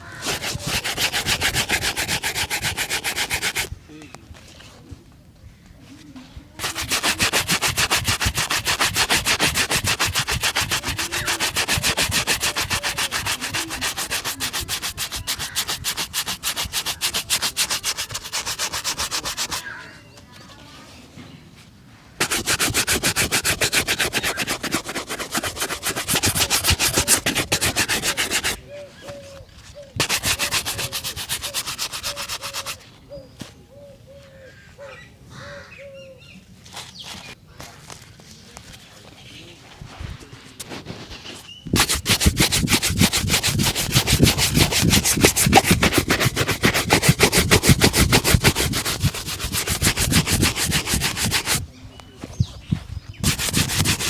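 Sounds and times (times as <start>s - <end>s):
shoe buffing strokes: 0.0s - 3.8s, 6.6s - 19.8s, 22.2s - 28.7s, 30.0s - 32.8s, 40.6s - 51.6s, 52.7s - 54.0s.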